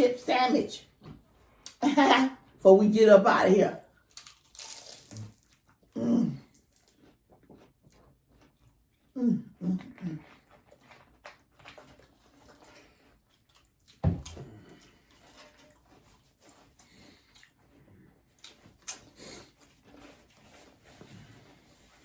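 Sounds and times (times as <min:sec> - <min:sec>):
person chewing: 0:01.4 - 0:01.8, 0:03.9 - 0:22.0
chip bag crackle and rustle: 0:04.1 - 0:05.5
crisp crunches: 0:04.1 - 0:05.7.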